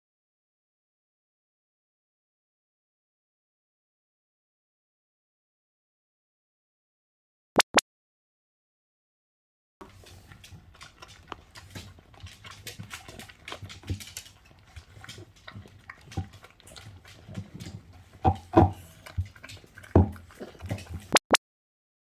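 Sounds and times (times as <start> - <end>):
dog snorting: 9.8 - 21.2.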